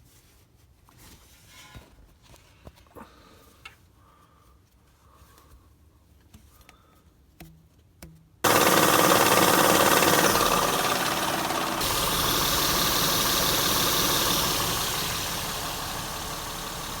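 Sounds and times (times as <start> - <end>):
car engine running: 8.4 - 17.0.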